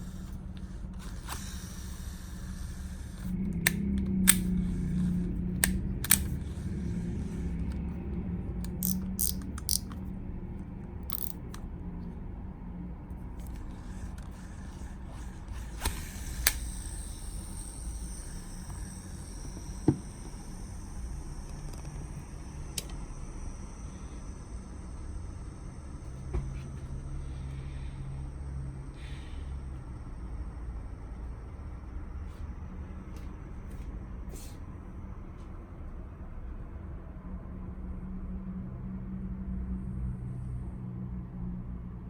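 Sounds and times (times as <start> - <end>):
fishing reel clicking: 0.0 - 7.8, 8.6 - 10.0, 11.0 - 11.6, 13.4 - 19.8.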